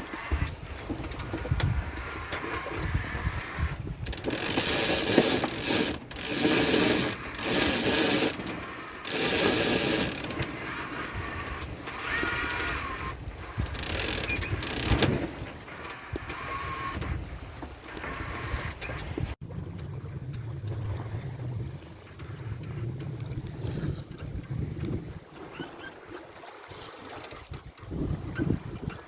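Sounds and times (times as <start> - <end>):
winch ratchet clicking: 1.9 - 10.6, 11.4 - 15.2.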